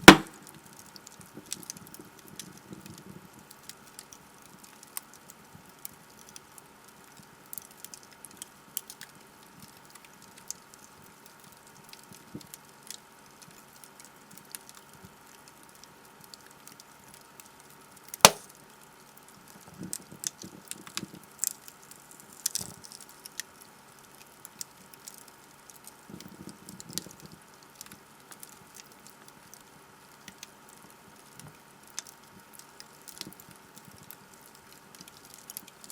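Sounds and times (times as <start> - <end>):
loud sharp pop from fire: 0.0 - 0.5, 18.2 - 18.5
logs crackling in a fireplace: 0.0 - 35.9.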